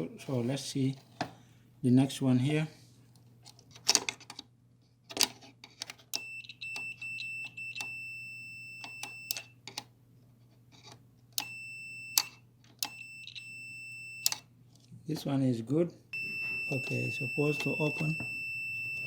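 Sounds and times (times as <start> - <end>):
multimeter continuity beep: 6.2 - 9.6, 11.4 - 14.4, 16.2 - 19.0
switch and probe clicks: 14.2 - 14.4.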